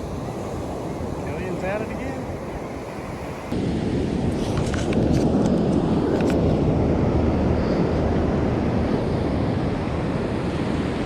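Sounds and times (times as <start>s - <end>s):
beach surf: 0.0s - 7.8s
wind noise on microphone: 0.0s - 11.0s.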